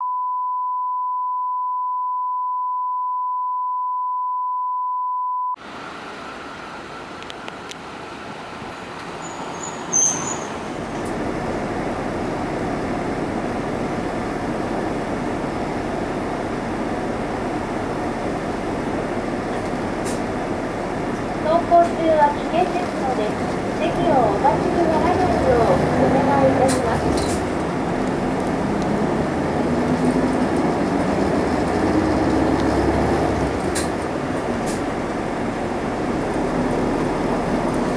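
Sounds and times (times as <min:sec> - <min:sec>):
bus engine and road noise: 0:05.6 - 0:37.9
brief high-pitched squeak: 0:09.2 - 0:10.7.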